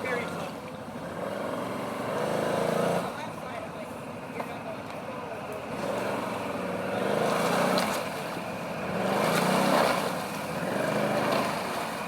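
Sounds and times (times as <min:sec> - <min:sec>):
vehicle engine revving: 0:00.0 - 0:03.2, 0:05.7 - 0:11.8.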